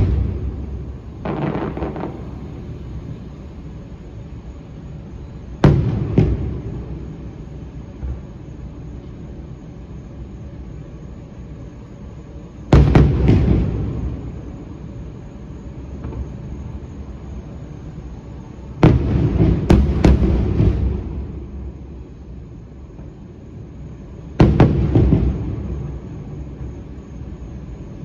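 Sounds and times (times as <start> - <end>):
fireworks bangs: 0.0 - 3.4, 5.4 - 8.2, 12.6 - 17.6, 18.6 - 22.1, 23.9 - 27.4.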